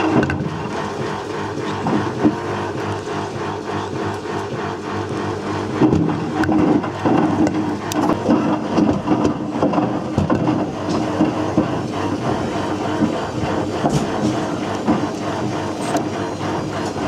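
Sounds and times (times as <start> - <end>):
objects clattering in washing machine: 0.0 - 0.9, 5.7 - 17.0
washing machine motor hum: 0.0 - 17.0.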